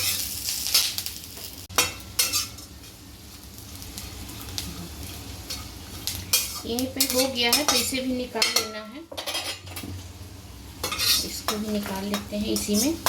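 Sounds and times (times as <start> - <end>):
food sizzling in oil: 0.0 - 13.0
metal spoon scraping a pan: 1.8 - 2.7, 5.5 - 9.9, 10.8 - 13.0.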